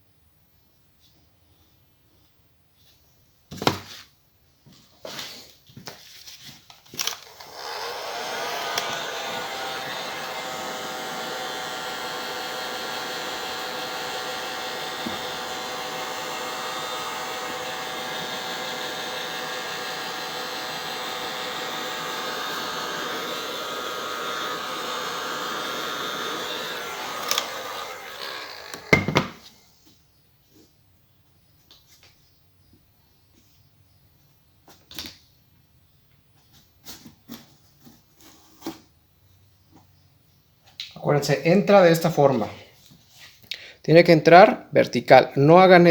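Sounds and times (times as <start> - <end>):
heat gun fan motor: 6.9 - 29.5
heat gun shutting off knock: 7.0 - 29.5.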